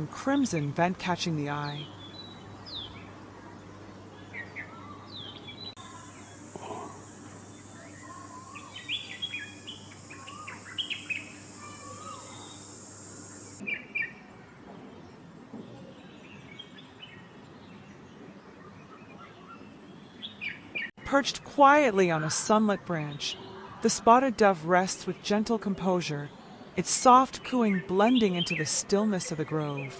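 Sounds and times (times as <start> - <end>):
wild birds chirping: 1.6 - 14.3, 22.0 - 29.9
steady high buzz: 5.8 - 13.6.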